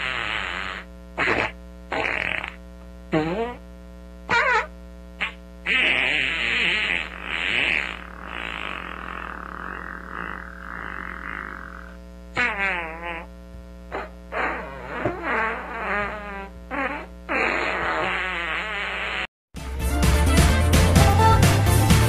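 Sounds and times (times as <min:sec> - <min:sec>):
fart sound effects: 0:00.0 - 0:03.7, 0:04.3 - 0:13.3, 0:13.9 - 0:19.3
steady electrical hum: 0:00.0 - 0:17.4.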